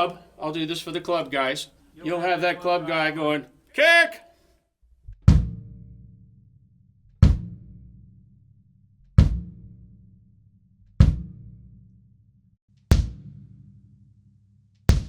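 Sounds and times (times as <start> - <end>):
kick drum strokes: 5.1 - 5.7, 7.2 - 7.8, 9.1 - 9.7, 10.9 - 11.6, 12.9 - 13.4.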